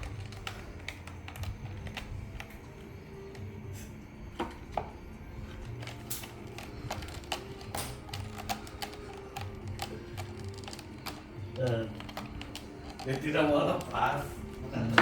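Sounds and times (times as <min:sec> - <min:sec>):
faint background music: 0:00.0 - 0:15.0
kitten claws clicking and tapping: 0:06.2 - 0:14.2.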